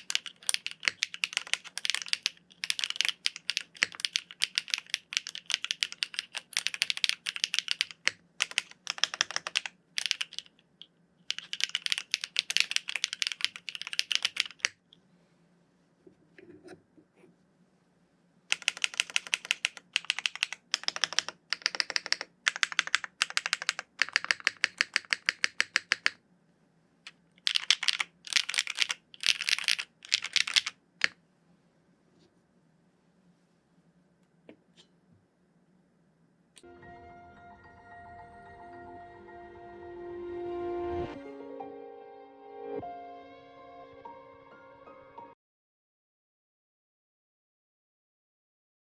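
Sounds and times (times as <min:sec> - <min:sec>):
fast typing on mechanical keyboard: 0:00.0 - 0:10.6, 0:11.3 - 0:14.8, 0:18.5 - 0:26.2, 0:27.4 - 0:31.2.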